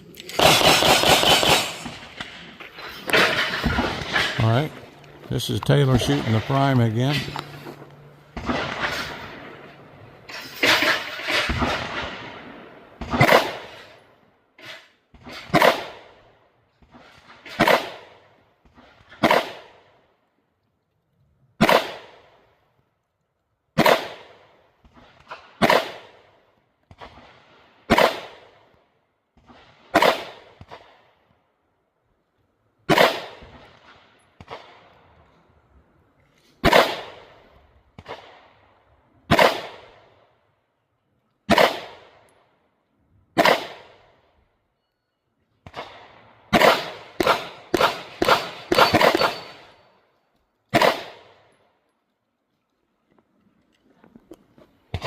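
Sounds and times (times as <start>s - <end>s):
pistol shots echoing: 0.2s - 7.3s, 11.4s - 13.8s, 15.4s - 16.2s, 17.6s - 18.2s, 19.2s - 19.8s, 21.6s - 22.4s, 23.8s - 24.6s, 25.6s - 26.3s, 27.9s - 28.6s, 29.9s - 31.0s, 32.9s - 33.6s, 36.6s - 37.4s, 39.3s - 40.1s, 41.5s - 42.2s, 43.4s - 44.1s, 45.6s - 49.9s, 50.7s - 51.5s.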